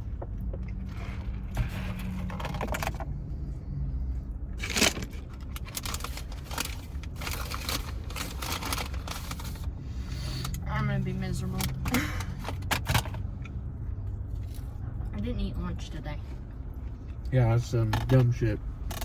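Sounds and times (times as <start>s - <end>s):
low steady hum: 0.0s - 19.0s
food packaging rustling: 4.6s - 9.7s.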